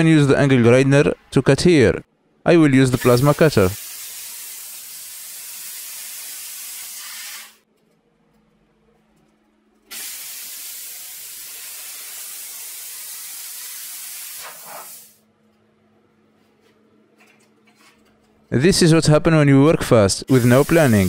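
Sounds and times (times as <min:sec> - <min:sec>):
plasma cutter hissing: 0:02.9 - 0:07.6, 0:09.9 - 0:15.2, 0:20.3 - 0:21.0.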